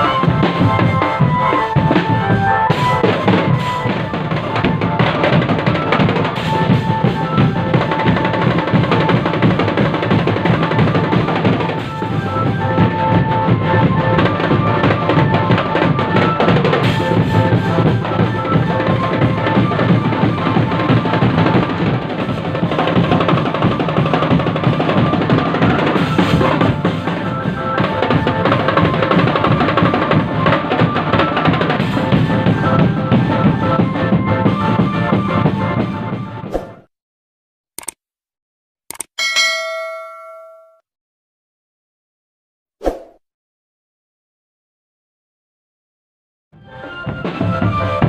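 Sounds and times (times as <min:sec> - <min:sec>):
marching drum band playing: 0:00.0 - 0:36.4
snare and bass drums: 0:00.0 - 0:36.9
melody line: 0:39.2 - 0:40.8.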